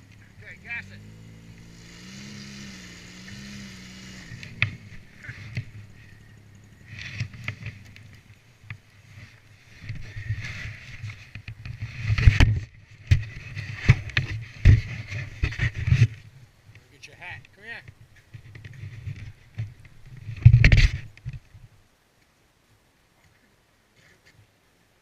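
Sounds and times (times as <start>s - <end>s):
engine running: 0.0s - 16.2s
irregular knocks and thumps: 7.0s - 16.3s.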